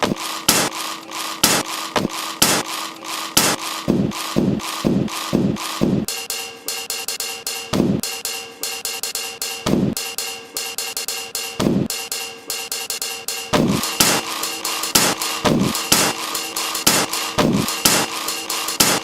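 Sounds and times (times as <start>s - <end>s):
fast even ticking strokes: 0.0s - 19.0s
steady held tone: 0.0s - 19.0s
low drum thump: 7.8s - 8.0s.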